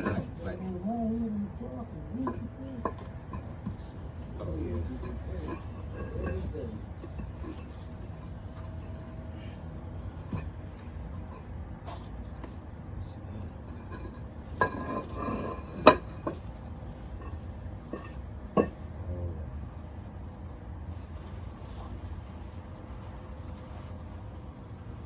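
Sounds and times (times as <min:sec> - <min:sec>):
solid objects clinking and knocking: 0:00.0 - 0:00.4
scraping shuffle: 0:00.0 - 0:12.7, 0:13.4 - 0:18.8, 0:19.8 - 0:25.0
low steady rumble: 0:00.0 - 0:25.0.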